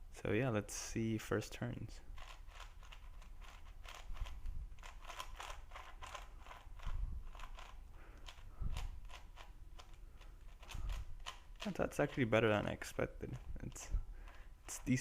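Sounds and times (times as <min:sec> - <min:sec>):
puzzle cube plastic clicks: 0:02.1 - 0:12.3.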